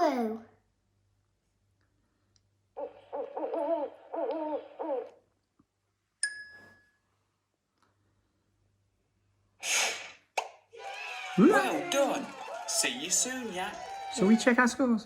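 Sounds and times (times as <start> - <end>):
owl hooting: 2.8 - 5.2.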